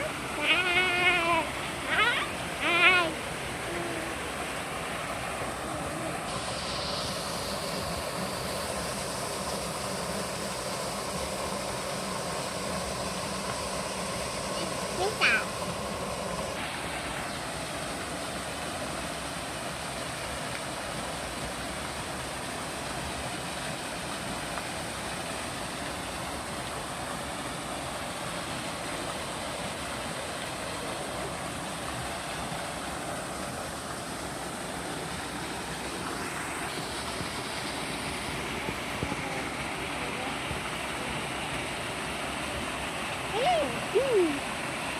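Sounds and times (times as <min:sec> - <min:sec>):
water rushing: 0:00.0 - 0:44.9.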